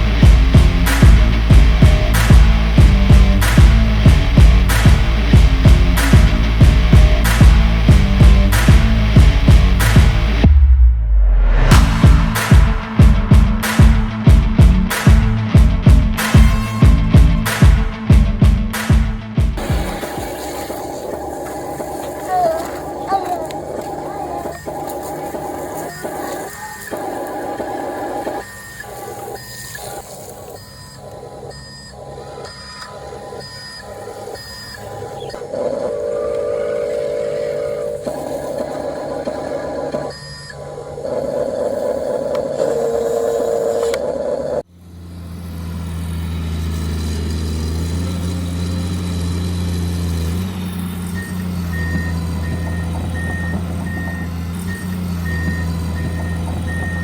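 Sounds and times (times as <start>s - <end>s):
toy vehicle motor tones: 19.9s - 57.0s
reversing beep: 24.1s - 35.4s, 40.0s - 40.6s, 51.0s - 57.0s
low engine hum: 44.7s - 57.0s.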